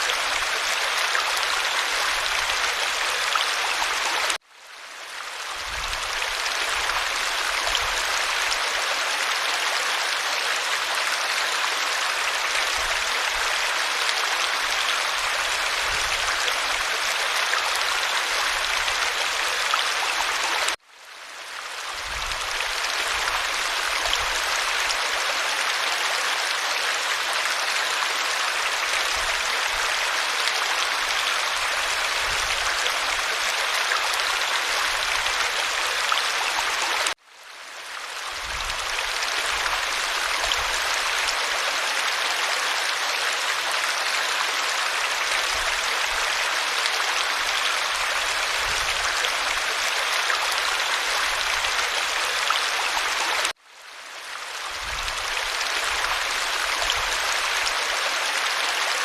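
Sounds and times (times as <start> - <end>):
stream rushing: 0.0 - 4.4, 5.0 - 20.8, 21.4 - 59.0.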